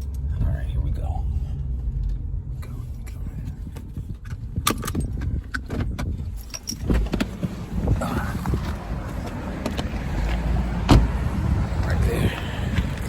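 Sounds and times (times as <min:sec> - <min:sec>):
engine and road rumble: 0:00.0 - 0:13.0
sharp clicks and rattles: 0:01.6 - 0:07.6.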